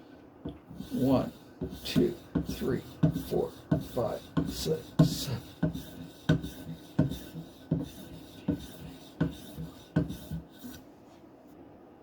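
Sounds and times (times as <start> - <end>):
knife scraping on strop: 0.7 - 10.8.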